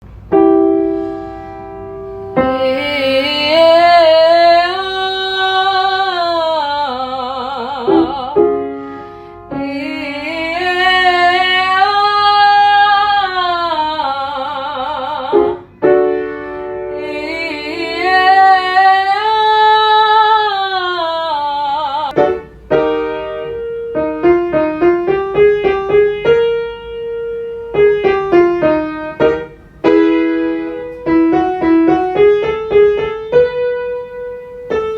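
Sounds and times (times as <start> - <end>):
piano chords: 0.0 - 34.9
person singing vocal scale: 2.4 - 8.7, 9.5 - 15.6, 16.9 - 22.2.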